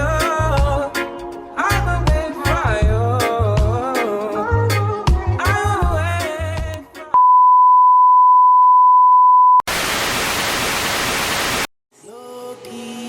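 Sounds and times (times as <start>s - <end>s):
steady electronic beep: 7.2s - 9.6s
loud static hiss: 9.7s - 11.7s.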